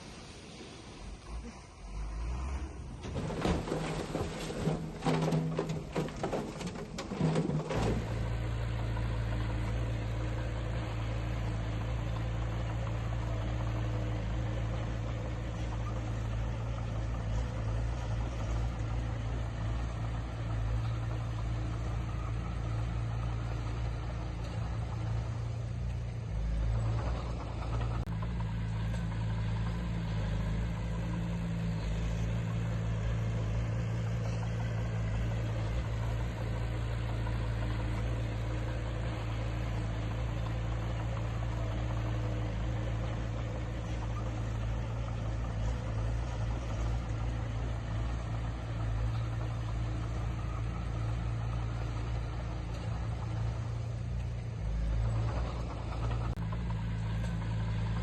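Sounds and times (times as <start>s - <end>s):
diesel engine droning: 0.0s - 58.0s.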